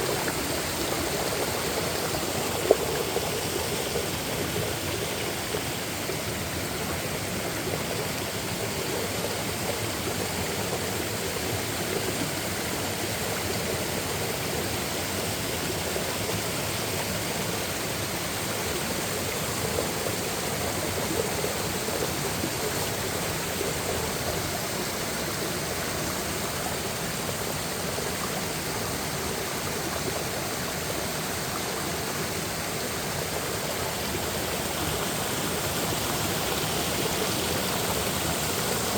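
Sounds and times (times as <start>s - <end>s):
stream rushing over rocks: 0.0s - 38.9s.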